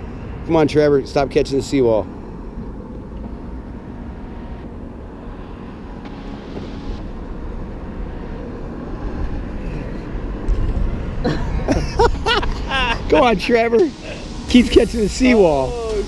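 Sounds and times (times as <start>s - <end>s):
vehicle engine rumble: 0.0s - 16.0s
faint hiss: 12.2s - 16.0s.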